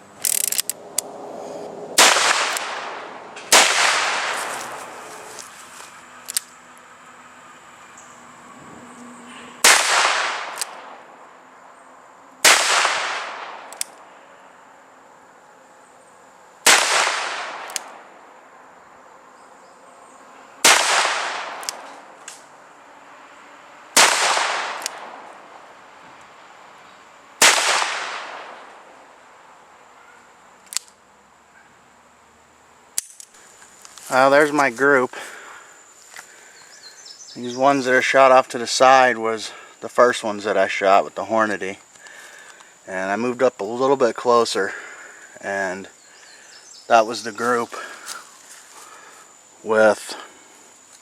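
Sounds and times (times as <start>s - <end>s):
faint sharp clicks: 13.7s - 14.0s, 17.6s - 18.0s, 21.6s - 22.5s, 30.6s - 31.0s.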